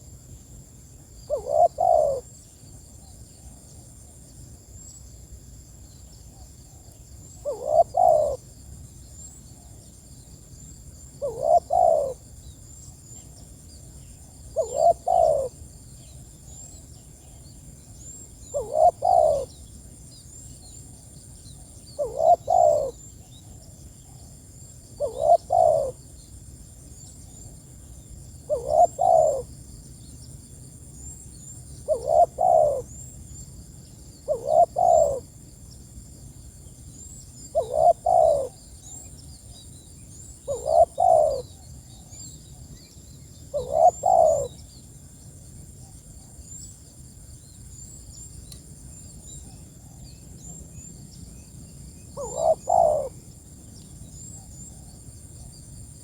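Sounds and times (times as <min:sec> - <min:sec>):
dove cooing: 0:01.3 - 0:02.3, 0:07.4 - 0:08.4, 0:11.2 - 0:12.2, 0:14.5 - 0:15.6, 0:18.5 - 0:19.5, 0:22.0 - 0:23.1, 0:25.0 - 0:26.0, 0:28.5 - 0:29.5, 0:31.8 - 0:33.0, 0:34.3 - 0:35.3, 0:37.5 - 0:38.6, 0:40.4 - 0:41.6, 0:43.5 - 0:44.6, 0:52.2 - 0:53.2.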